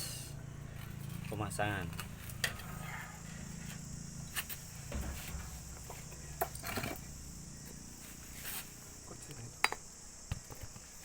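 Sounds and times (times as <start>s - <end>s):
insect chirring: 0.0s - 11.0s
sharp knocks and clicks: 4.9s - 7.0s.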